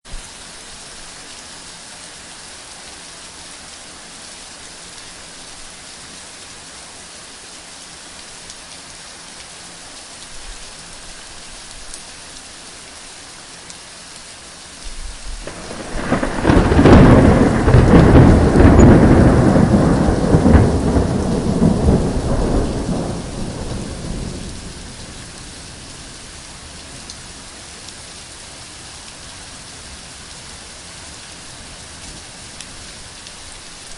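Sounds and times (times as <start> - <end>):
heavy rain falling: 0.1 - 33.9
thunder rumbling: 15.4 - 25.2.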